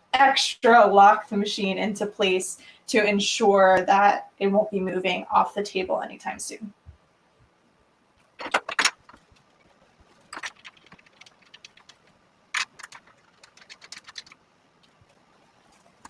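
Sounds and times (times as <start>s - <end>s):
small hard parts clicking: 8.4s - 15.0s.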